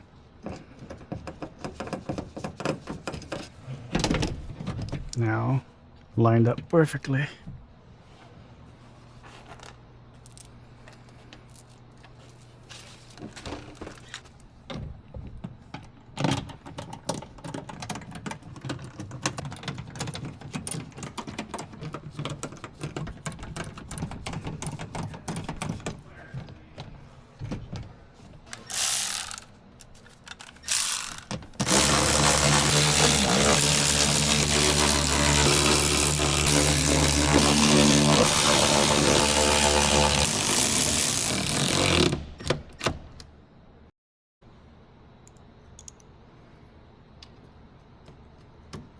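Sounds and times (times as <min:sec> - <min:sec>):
hand ratchet clicking: 0:28.6 - 0:29.5, 0:30.6 - 0:42.1
power tool running loudly: 0:30.7 - 0:42.0.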